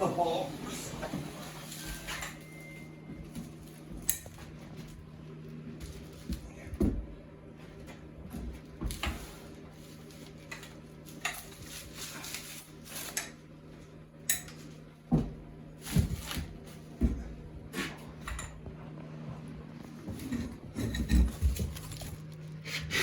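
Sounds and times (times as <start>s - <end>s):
clatter of bicycle and packaging: 8.8s - 13.4s.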